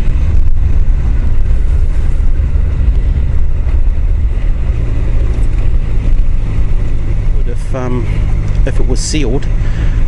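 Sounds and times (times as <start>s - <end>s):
motorcycle engine running: 0.0s - 10.0s
road rumble: 0.0s - 10.0s
wind: 0.0s - 10.0s.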